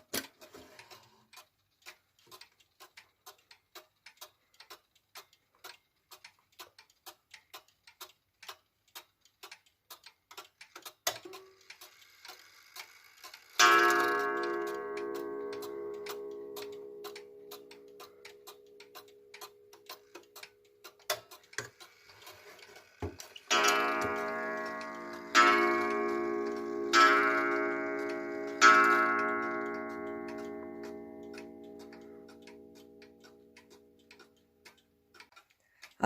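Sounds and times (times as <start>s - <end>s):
wall clock ticking: 0.0s - 36.0s
hammer striking coil gong: 23.5s - 31.1s.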